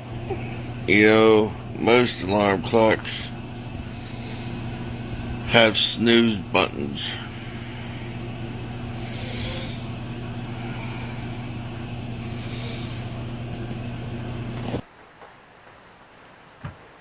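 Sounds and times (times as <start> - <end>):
low mechanical hum: 0.0 - 17.0
hiss: 9.0 - 10.0.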